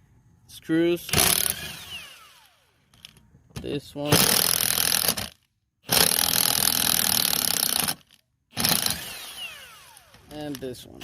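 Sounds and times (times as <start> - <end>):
power tool running in bursts: 1.1 - 2.7, 8.6 - 10.3.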